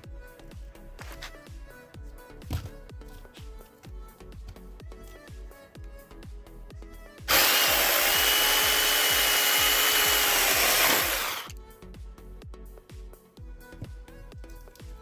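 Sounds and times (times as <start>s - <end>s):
music with a beat: 0.0s - 10.3s, 11.5s - 15.0s
chainsaw cutting wood: 7.3s - 11.5s.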